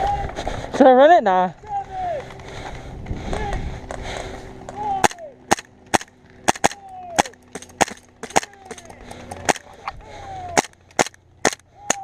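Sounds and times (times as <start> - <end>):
airsoft gun shots: 5.0 - 9.7, 10.6 - 12.0.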